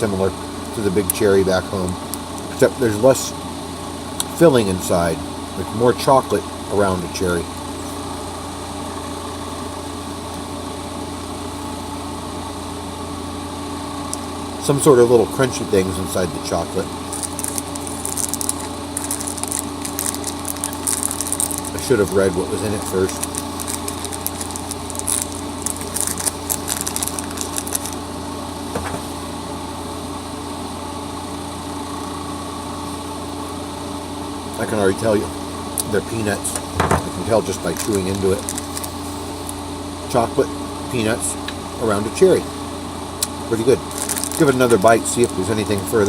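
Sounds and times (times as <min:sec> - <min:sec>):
low mechanical hum: 0:00.0 - 0:46.0
candy crunching while chewed: 0:17.0 - 0:28.0, 0:37.2 - 0:39.2, 0:43.2 - 0:46.0.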